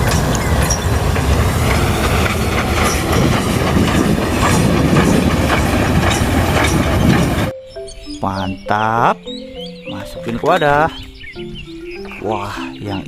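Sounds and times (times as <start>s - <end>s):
clickety-clack of train wheels: 0.0s - 7.5s
train rumble: 0.0s - 7.5s.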